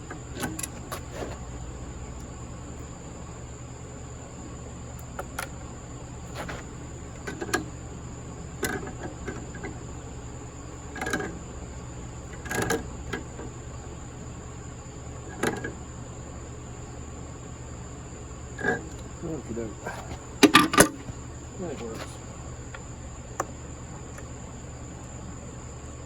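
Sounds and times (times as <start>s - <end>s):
steady low hum: 0.0s - 26.0s
metal tools knocking and clinking: 20.4s - 21.1s.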